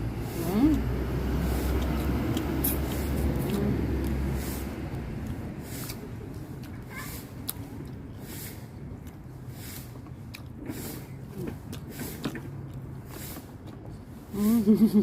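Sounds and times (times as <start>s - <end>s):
person chewing and biting: 1.6s - 6.8s, 8.9s - 13.8s
sharp mouth clicks: 1.7s - 4.4s
noisy breaths: 4.1s - 6.2s, 8.0s - 14.4s.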